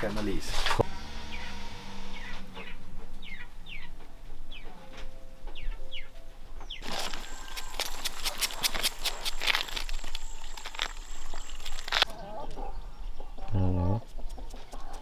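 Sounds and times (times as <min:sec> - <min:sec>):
chicks peeping: 0:06.8 - 0:12.1
crackling rustling with sharp clicks: 0:06.8 - 0:12.1.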